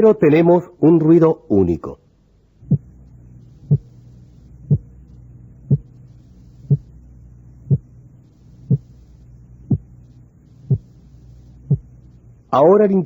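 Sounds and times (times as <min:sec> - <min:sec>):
steady low hum: 0:00.0 - 0:13.0
single heartbeat sound: 0:02.6 - 0:03.0, 0:03.6 - 0:04.0, 0:04.7 - 0:04.9, 0:05.7 - 0:05.9, 0:06.7 - 0:06.9, 0:07.7 - 0:07.9, 0:08.6 - 0:09.0, 0:09.7 - 0:09.9, 0:10.6 - 0:10.9, 0:11.7 - 0:11.9.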